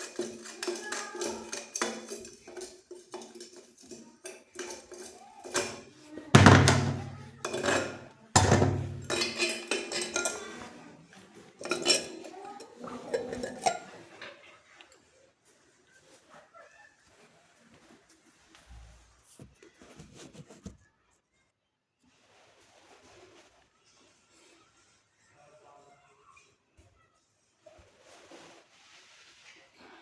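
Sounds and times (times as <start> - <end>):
tools clinking and knocking: 0.0 - 10.7, 11.6 - 13.8.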